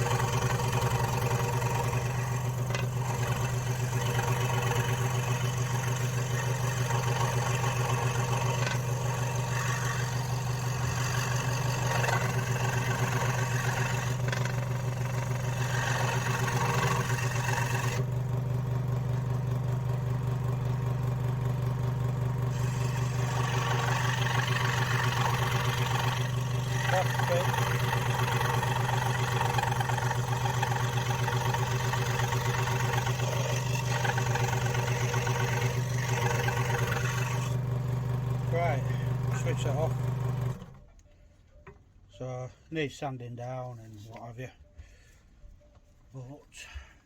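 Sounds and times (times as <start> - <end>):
scroll saw blade cutting wood: 0.0 - 18.1, 22.5 - 37.6, 38.4 - 40.8
saw motor hum: 0.0 - 40.9.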